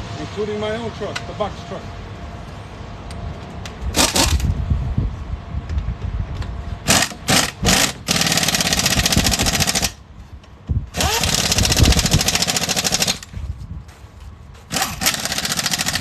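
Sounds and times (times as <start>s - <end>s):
impact wrench hammering: 14.7s - 16.0s.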